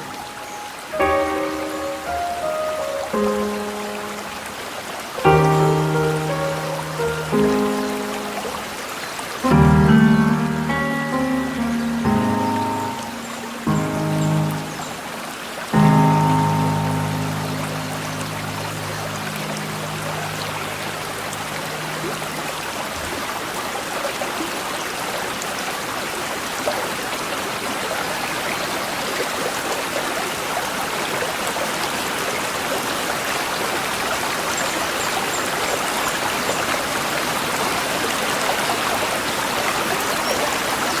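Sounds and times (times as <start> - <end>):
piano chord: 0.0 - 4.6, 5.2 - 22.5
stream water flowing: 0.0 - 41.0.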